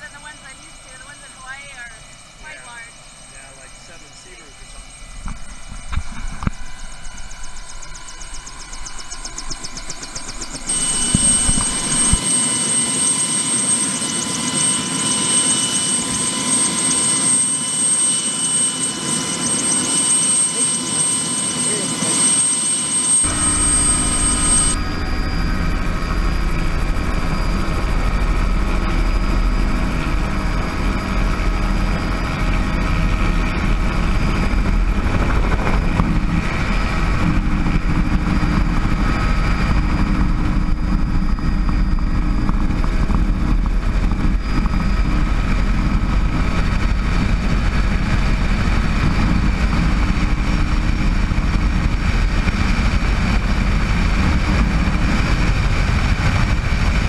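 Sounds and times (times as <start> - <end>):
helicopter running: 0.0 - 57.0.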